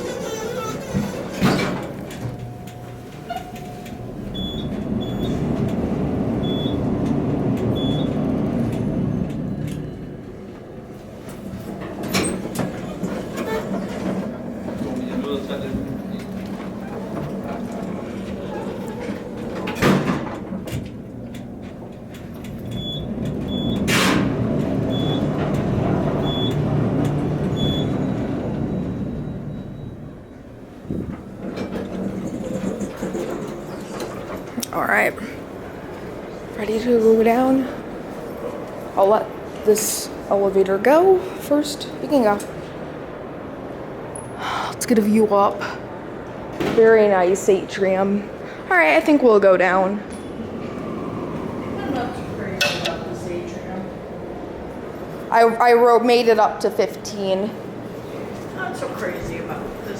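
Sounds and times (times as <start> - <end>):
elevator doors closing knock: 0.0 - 34.5
elevator car low rumble: 0.0 - 59.9.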